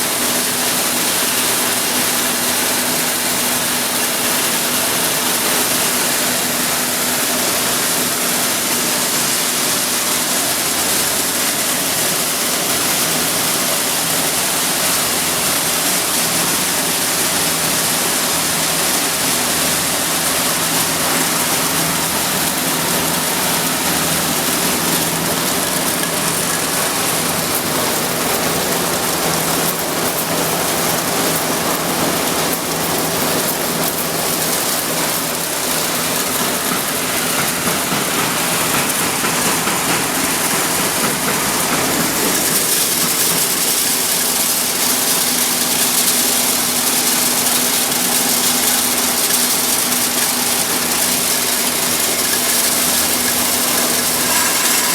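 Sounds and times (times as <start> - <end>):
milling machinery roaring: 0.1 - 54.9.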